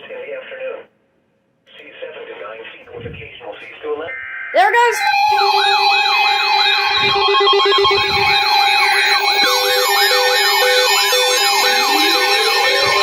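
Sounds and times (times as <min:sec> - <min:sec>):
steady tones: 0:03.0 - 0:13.0
siren-like yelp: 0:03.8 - 0:13.0
on-off beeping: 0:04.0 - 0:13.0.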